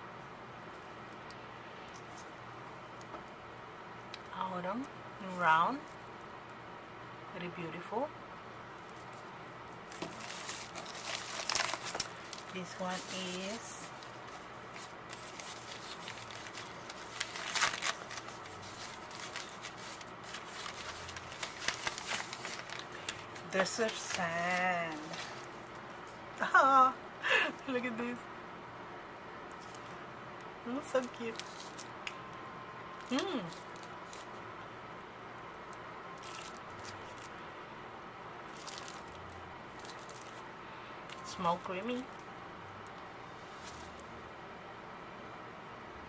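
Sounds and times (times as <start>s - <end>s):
packaging rustling and crinkling: 8.9s - 26.1s, 31.0s - 32.0s, 33.0s - 34.4s, 36.2s - 37.4s, 38.5s - 40.4s.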